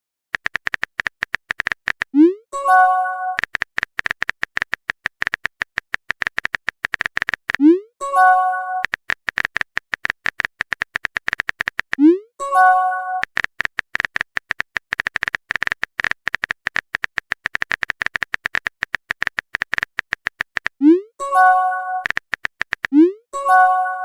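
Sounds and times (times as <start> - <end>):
phone keyboard typing clicks: 0.4 - 12.2, 13.2 - 24.0
chat message alert chime: 2.6 - 3.4, 8.0 - 8.8.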